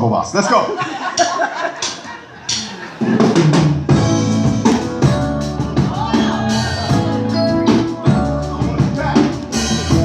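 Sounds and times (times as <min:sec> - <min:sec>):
drum kit beat: 0:01.1 - 0:10.0
live band playing: 0:01.8 - 0:10.0.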